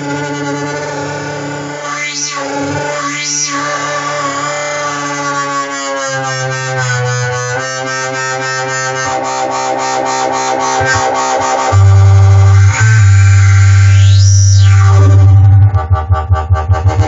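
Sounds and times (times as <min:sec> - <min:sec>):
synthesizer sustained notes: 0:06.4 - 0:17.0
synth bass: 0:06.8 - 0:17.0
fast high synth pulsing: 0:10.8 - 0:17.0.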